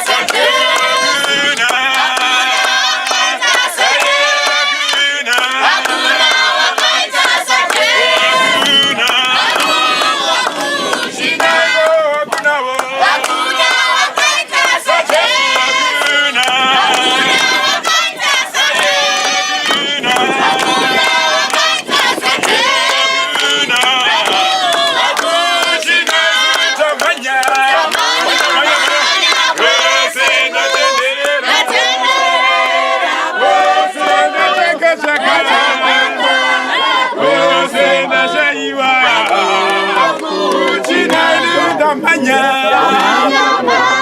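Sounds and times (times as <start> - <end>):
crowd singing in unison: 0.0 - 44.0.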